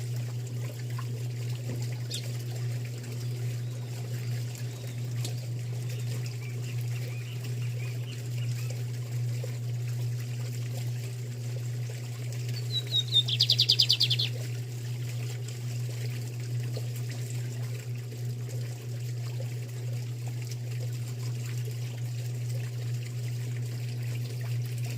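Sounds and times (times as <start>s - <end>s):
steady low hum: 0.0s - 24.9s
bird singing high rapid notes: 12.6s - 14.4s.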